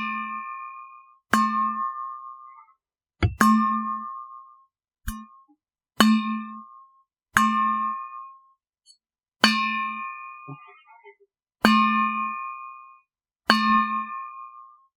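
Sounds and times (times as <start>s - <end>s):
metal bottle pinging: 3.2s - 3.6s.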